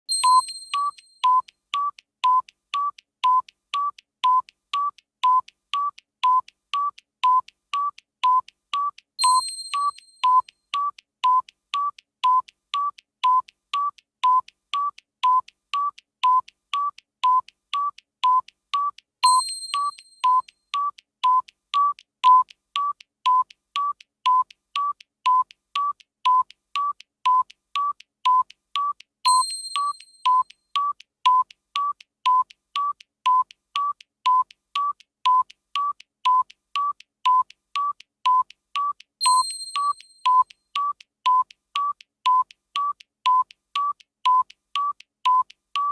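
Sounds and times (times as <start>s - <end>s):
high ringing ding: 0.1s - 1.0s, 9.2s - 10.1s, 19.2s - 20.3s, 29.3s - 30.4s, 39.2s - 40.4s
electronic timer ticking: 0.1s - 45.9s.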